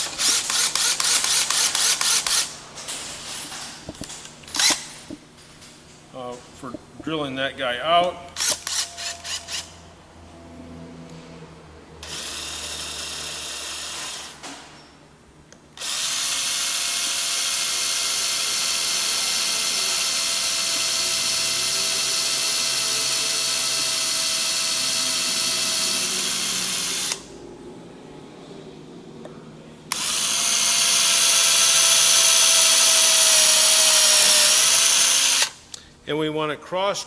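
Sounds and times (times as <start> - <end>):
electric drill whining: 0.0 - 2.6, 4.0 - 4.9, 8.4 - 9.7, 12.0 - 14.4, 15.8 - 27.3, 29.9 - 35.6.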